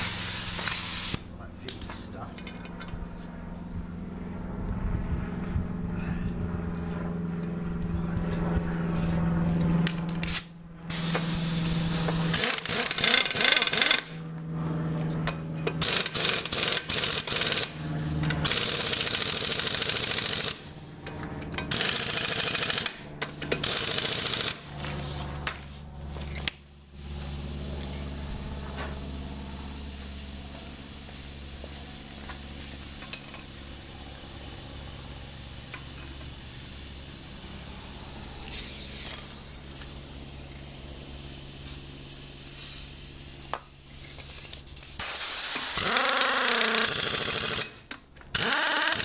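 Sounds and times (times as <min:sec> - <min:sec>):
pneumatic air tool bursts: 0:00.0 - 0:01.2, 0:10.2 - 0:14.2, 0:15.8 - 0:21.1, 0:21.7 - 0:28.1, 0:35.0 - 0:37.6, 0:38.4 - 0:49.0
air compressor motor humming: 0:00.0 - 0:01.5, 0:09.0 - 0:49.0.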